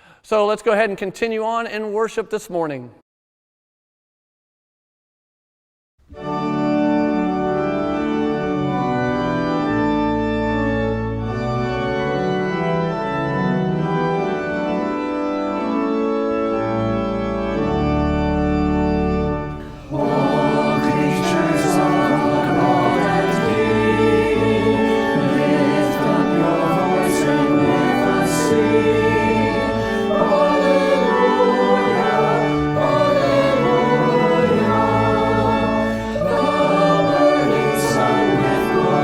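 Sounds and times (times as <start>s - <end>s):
organ playing hymn chords: 6.1s - 39.0s
voices singing: 19.6s - 39.0s.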